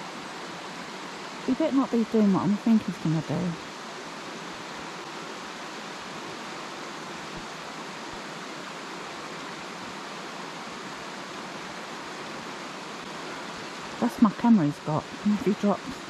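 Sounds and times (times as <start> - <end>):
waterfall rushing: 3.6 - 16.0.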